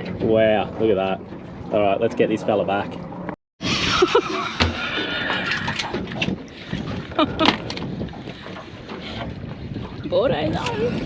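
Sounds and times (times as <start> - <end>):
horse snorting: 3.6 - 5.9
horse whinnying: 3.6 - 6.0.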